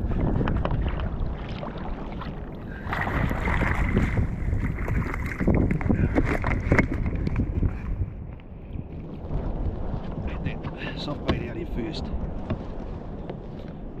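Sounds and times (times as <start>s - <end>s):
wind rumbling on microphone: 0.0s - 14.0s
knocks and clicks of fish handling: 5.5s - 7.6s.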